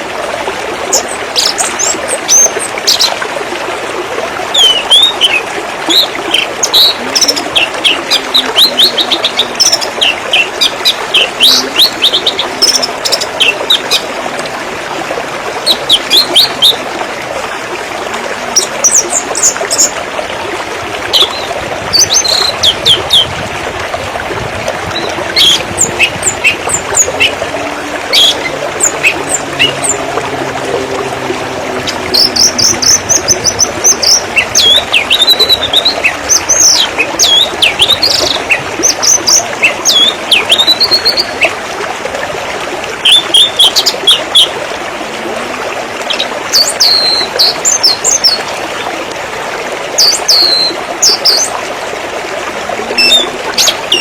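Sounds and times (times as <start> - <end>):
river water rushing: 0.0 - 54.0
birds chirping: 24.9 - 41.5.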